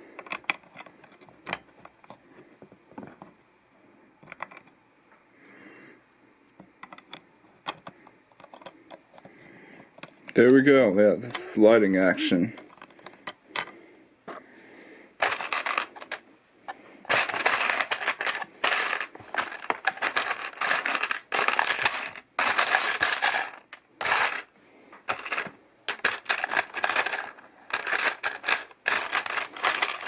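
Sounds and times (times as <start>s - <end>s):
plastic toy bricks clattering: 0.1s - 2.2s, 6.8s - 9.3s, 15.2s - 16.2s, 17.0s - 30.0s.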